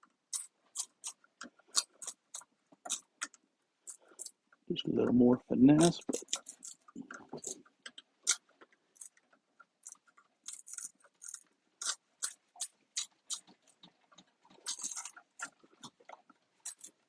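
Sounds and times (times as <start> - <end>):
plastic cracking and snapping: 14.2 - 17.0.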